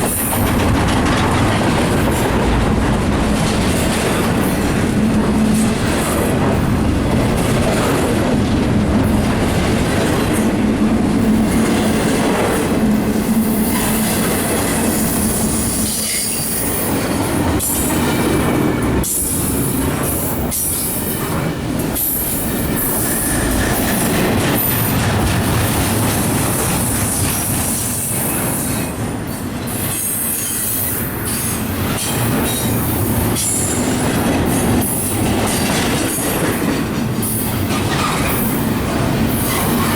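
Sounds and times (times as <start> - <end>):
wheels clacking over rail joints: 0.0 - 28.5, 31.2 - 39.9
freight train cars rolling: 0.0 - 39.9
train wheels squealing: 13.4 - 21.2, 22.0 - 25.0, 27.2 - 39.9.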